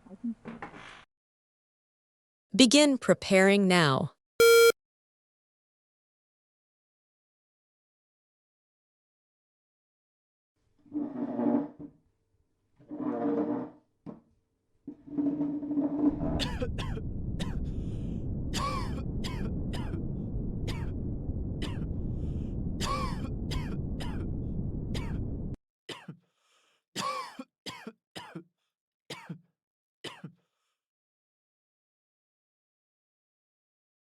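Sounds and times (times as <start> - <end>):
steady low rumble: 16.1 - 25.6
short coughs: 25.9 - 26.2, 27.0 - 28.5, 29.1 - 29.5, 30.1 - 30.4.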